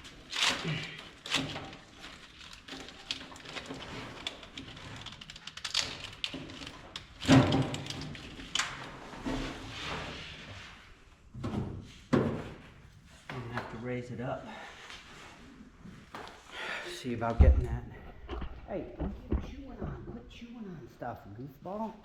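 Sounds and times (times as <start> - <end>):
loud thump: 17.4 - 20.2.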